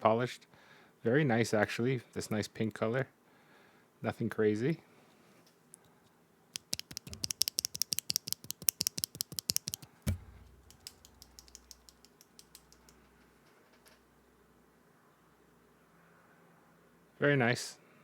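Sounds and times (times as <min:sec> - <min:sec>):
plastic switches clacking: 0:06.6 - 0:12.9
thump: 0:10.1 - 0:10.7.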